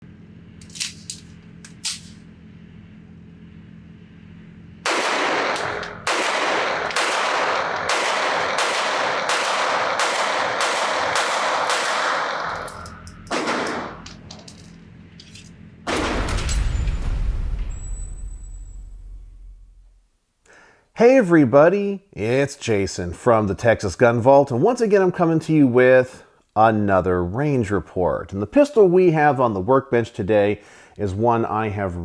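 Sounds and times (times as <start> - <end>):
pistol shots: 4.9 - 14.0.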